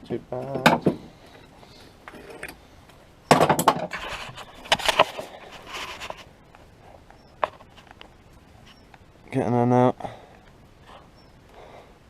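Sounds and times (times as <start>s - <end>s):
clattering knocks and scraping: 0.4s - 2.6s, 3.3s - 8.9s.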